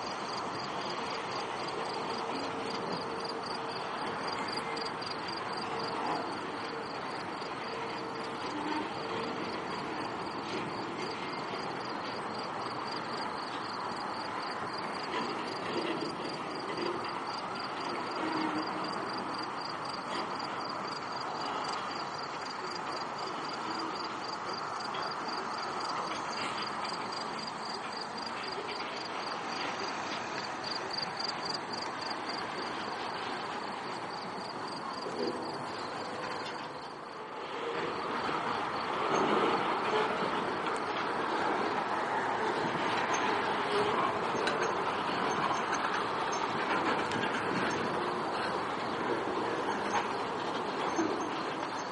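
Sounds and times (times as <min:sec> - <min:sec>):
freight train rumbling past: 0:00.0 - 0:51.9
insects chirping: 0:00.1 - 0:37.1.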